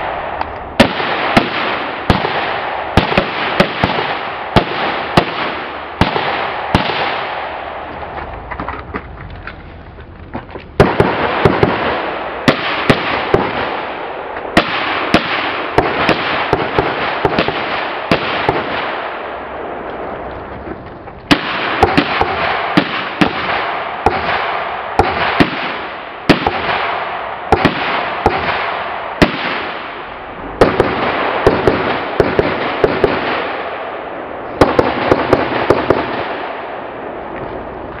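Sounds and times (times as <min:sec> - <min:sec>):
rifle shots: 0:00.0 - 0:08.4, 0:10.8 - 0:20.2, 0:21.3 - 0:37.4.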